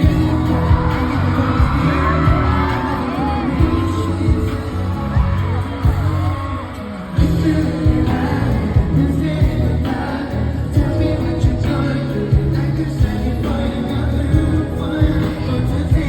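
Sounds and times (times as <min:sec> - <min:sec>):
drums: 0:00.0 - 0:16.0
live pop-rock band playing: 0:00.0 - 0:16.0
person singing: 0:00.0 - 0:16.0.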